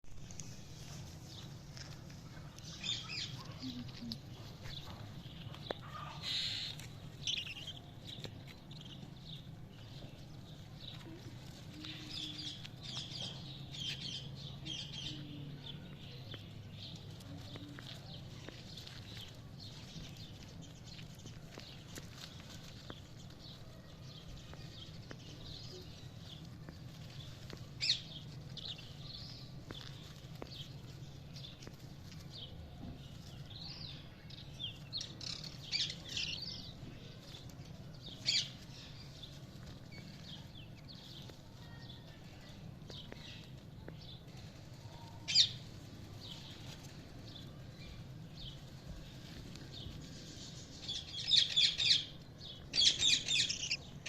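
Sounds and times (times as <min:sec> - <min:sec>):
budgerigars chirping: 0:04.8 - 0:07.8, 0:52.8 - 0:54.0.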